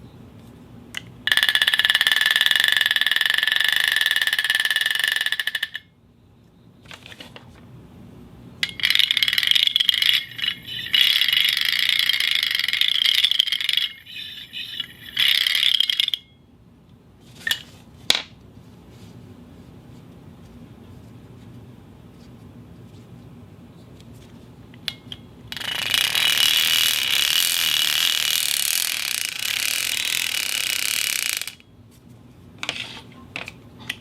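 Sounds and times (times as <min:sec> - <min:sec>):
object squealing on concrete: 0:10.0 - 0:16.0.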